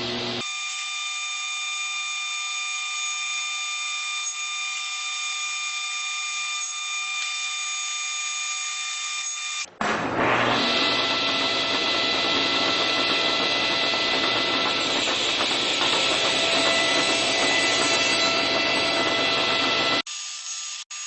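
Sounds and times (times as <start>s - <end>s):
power tool motor whining: 10.4s - 21.0s.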